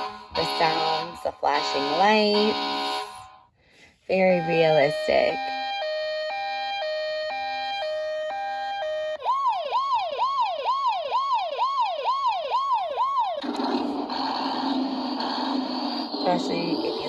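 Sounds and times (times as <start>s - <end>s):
toy electronic siren: 0.0s - 3.4s, 4.1s - 17.0s
noisy electronic sound effect: 13.4s - 17.0s.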